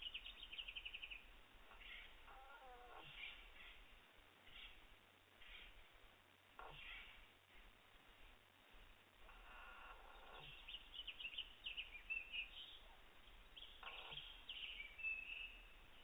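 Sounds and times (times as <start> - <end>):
rapid high bird chirps: 10.2 - 15.7.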